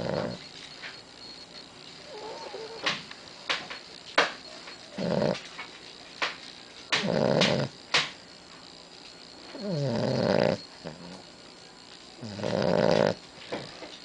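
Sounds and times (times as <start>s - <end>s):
dog snoring: 0.0s - 0.5s, 2.0s - 2.9s, 4.9s - 5.6s, 6.9s - 7.8s, 9.5s - 11.3s, 12.2s - 14.0s
faint wavering whine: 0.0s - 14.0s.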